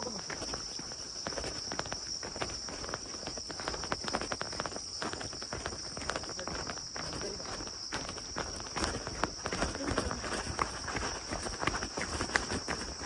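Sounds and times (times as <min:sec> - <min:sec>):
footsteps on a trail: 0:00.0 - 0:13.0
insects droning: 0:00.0 - 0:13.0.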